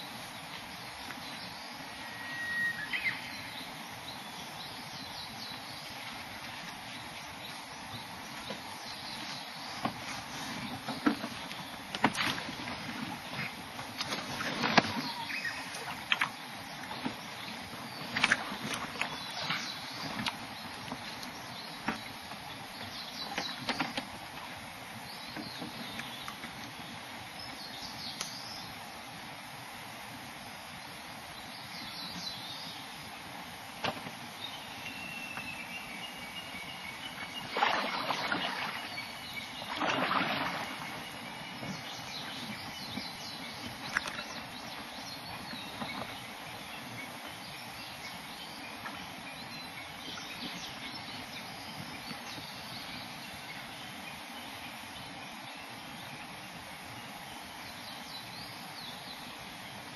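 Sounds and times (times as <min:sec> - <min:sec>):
water splashes: 0:00.0 - 0:27.1, 0:36.5 - 0:47.5
kayak paddle dipping and dripping: 0:00.1 - 0:27.6, 0:33.7 - 0:52.8.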